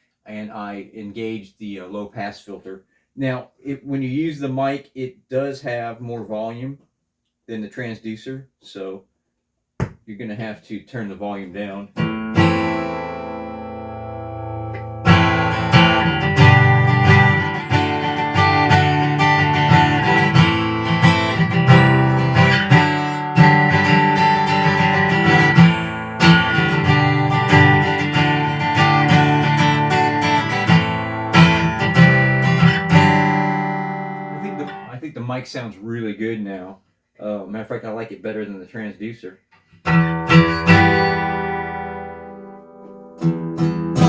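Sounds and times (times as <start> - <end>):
acoustic guitar chords: 11.9 - 35.0, 39.6 - 44.0.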